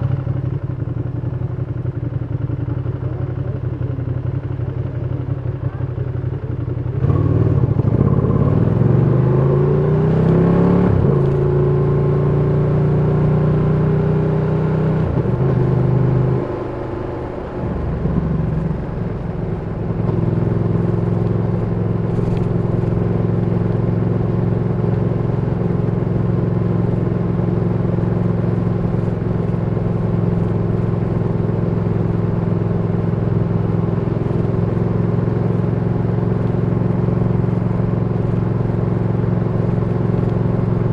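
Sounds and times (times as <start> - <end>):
motorcycle engine accelerating: 0.0 - 40.9
gear change: 10.1 - 11.9, 16.5 - 23.5.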